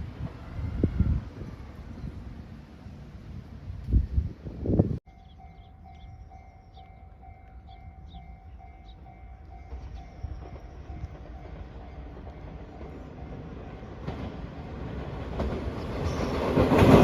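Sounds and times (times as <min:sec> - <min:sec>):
approaching train rumble: 0:00.0 - 0:17.0
level-crossing warning bell ringing: 0:05.0 - 0:14.4.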